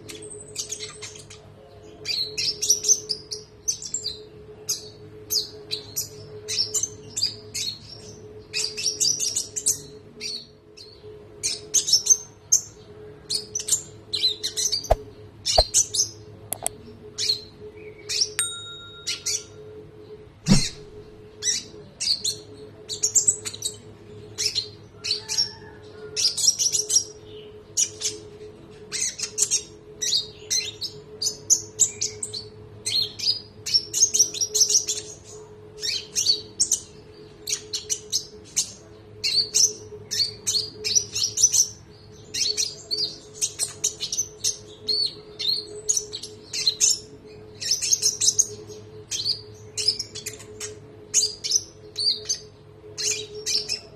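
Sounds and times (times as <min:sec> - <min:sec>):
songbird singing: 0:16.6 - 0:19.6.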